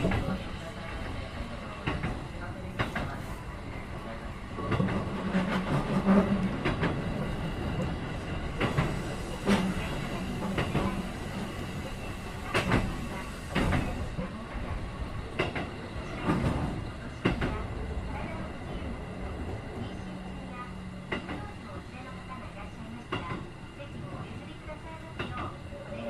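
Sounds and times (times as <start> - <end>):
train low hum: 0.0 - 26.0.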